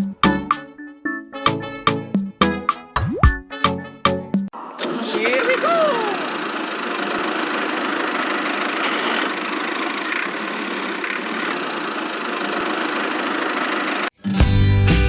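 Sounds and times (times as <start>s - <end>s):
small motor running: 4.8s - 14.1s.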